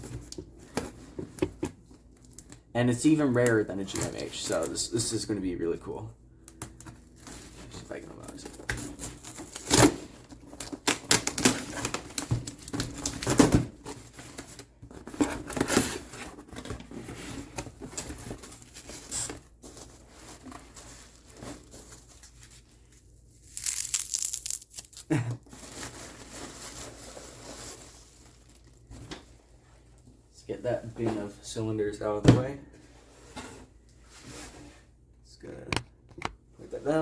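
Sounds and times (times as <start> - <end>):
packaging crinkling and tearing: 8.9 - 14.6, 20.7 - 28.9.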